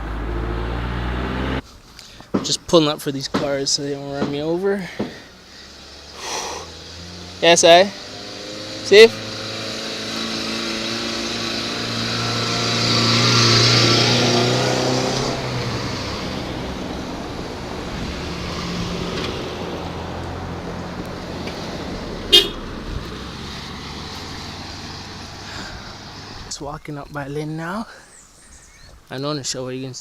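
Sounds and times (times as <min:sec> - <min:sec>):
cars passing: 0:00.0 - 0:26.8.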